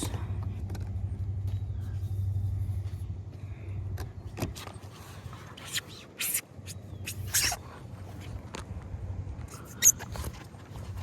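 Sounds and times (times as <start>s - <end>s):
low steady rumble: 0.0s - 11.0s
scraping rustles: 4.3s - 8.5s.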